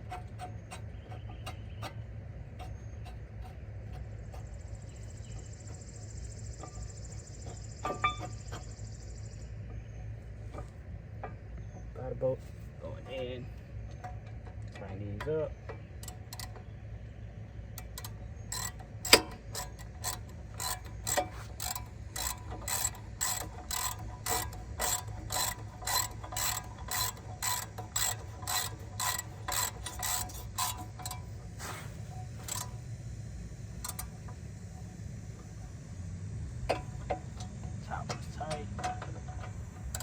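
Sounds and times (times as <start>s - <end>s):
ratchet wrench clicking: 16.0s - 16.6s, 17.8s - 31.4s, 32.1s - 32.8s, 33.7s - 34.4s, 36.7s - 40.0s.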